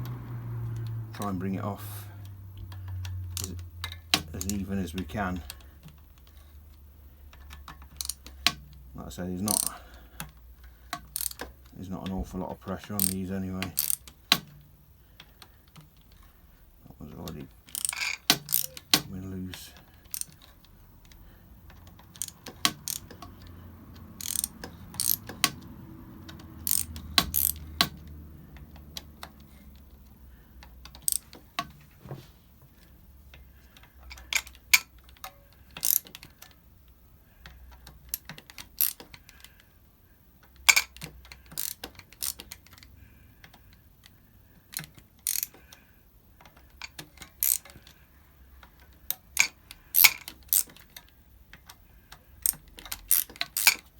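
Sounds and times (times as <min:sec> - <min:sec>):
socket ratchet clicking: 0:00.0 - 0:01.4, 0:02.1 - 0:11.8, 0:12.8 - 0:31.8, 0:32.8 - 0:53.9
metal clicks and clinks: 0:17.2 - 0:25.6, 0:48.6 - 0:51.7, 0:52.4 - 0:53.9.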